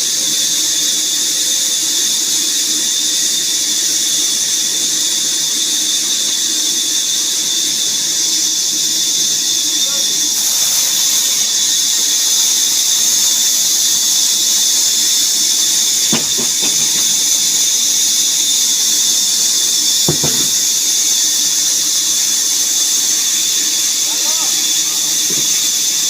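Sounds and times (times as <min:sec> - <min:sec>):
woodworking saw whining: 0:09.6 - 0:26.0
brief knocks: 0:16.1 - 0:17.4, 0:20.1 - 0:20.8.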